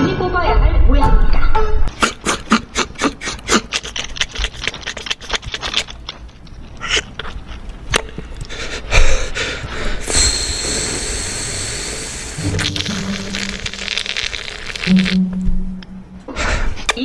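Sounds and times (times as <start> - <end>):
loud mouth burst: 1.9 - 5.0, 10.0 - 15.4
steady hiss: 9.3 - 15.2
beatbox clicks and scrapes: 10.0 - 15.2.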